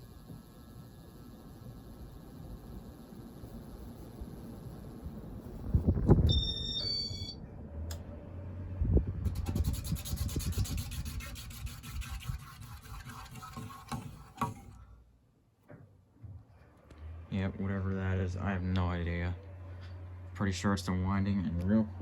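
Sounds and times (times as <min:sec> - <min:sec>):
ceiling fan motor ticking buzz: 0:00.0 - 0:06.8, 0:16.7 - 0:22.0
high beeps: 0:06.2 - 0:07.4.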